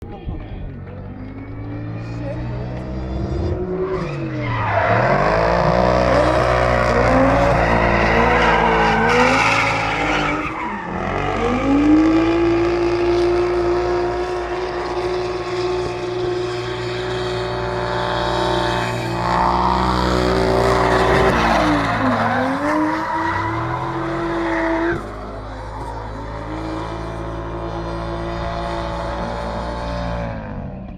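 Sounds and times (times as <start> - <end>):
car engines revving high: 0.0 - 30.9
tyres squealing: 4.0 - 11.0, 18.8 - 26.6.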